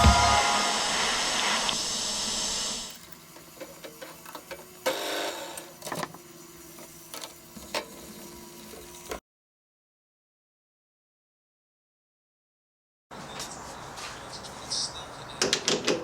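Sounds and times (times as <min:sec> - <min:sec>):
short rush of noise: 0:00.0 - 0:02.9.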